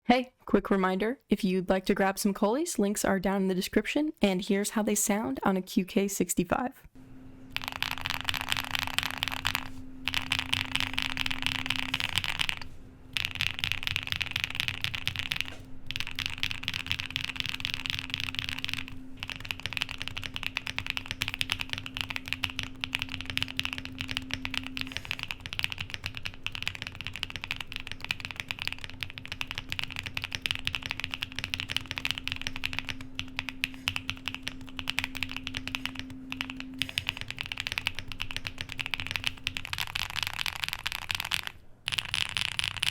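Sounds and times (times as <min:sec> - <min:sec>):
mechanical keyboard typing: 0:07.5 - 0:42.9.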